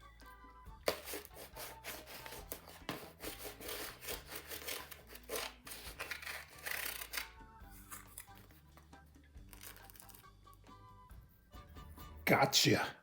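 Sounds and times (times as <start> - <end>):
rough rubbing and scraping: 0.9 - 8.3.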